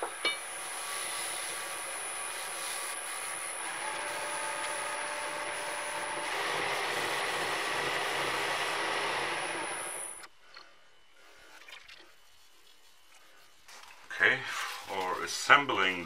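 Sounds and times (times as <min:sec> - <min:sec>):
polish friction hiss: 0:00.0 - 0:10.3, 0:12.0 - 0:16.0
wood lathe whine: 0:00.0 - 0:10.3.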